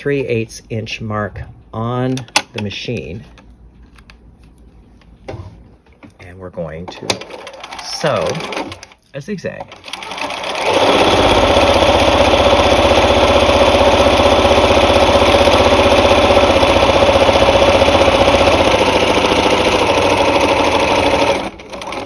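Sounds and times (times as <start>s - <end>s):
sewing machine running: 7.1s - 9.0s, 9.7s - 22.0s.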